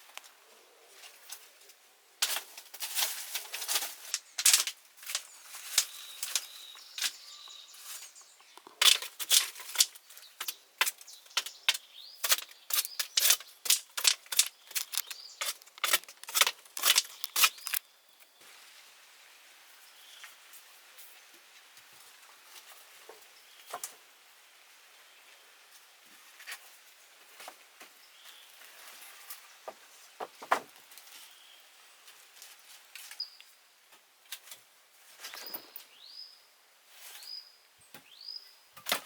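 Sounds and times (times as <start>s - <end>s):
sharp irregular clicks and snaps: 4.1s - 7.2s, 8.5s - 17.9s.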